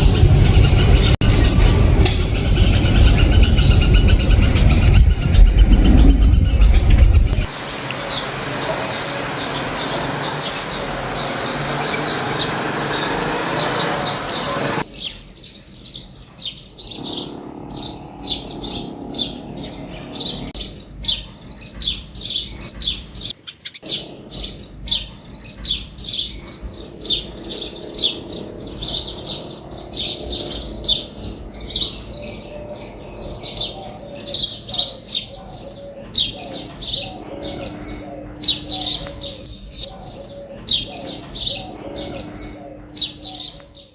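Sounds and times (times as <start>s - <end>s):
steady rushing noise: 0.0s - 14.8s, 16.9s - 20.6s, 35.9s - 43.6s
small birds chirping: 0.0s - 43.9s.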